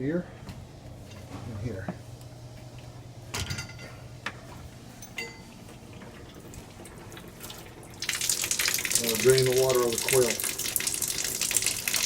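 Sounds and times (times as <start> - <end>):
low steady hum: 0.0 - 12.0
metallic clinks and taps: 5.0 - 5.5.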